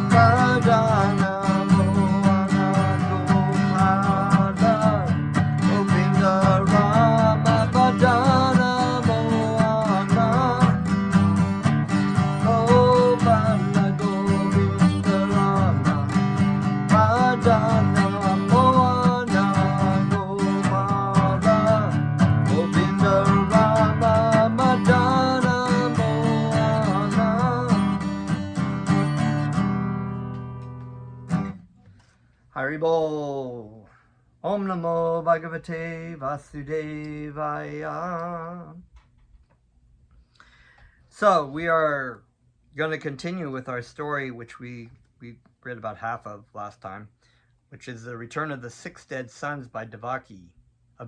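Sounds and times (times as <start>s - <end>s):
acoustic guitar strumming: 0.0s - 31.9s.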